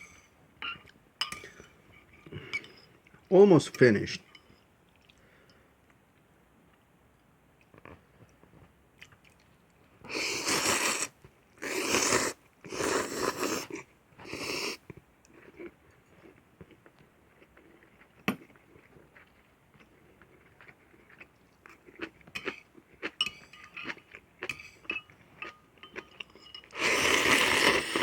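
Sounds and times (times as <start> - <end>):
loud hissing noodle slurps: 10.1 - 14.8, 26.8 - 28.0.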